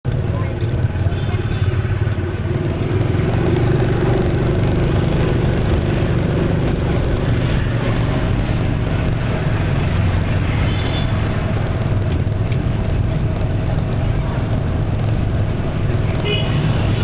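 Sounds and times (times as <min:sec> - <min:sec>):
road and wind noise: 0:00.0 - 0:17.0
surrounding traffic: 0:00.0 - 0:17.0
motorbike engine rumble: 0:00.1 - 0:17.0.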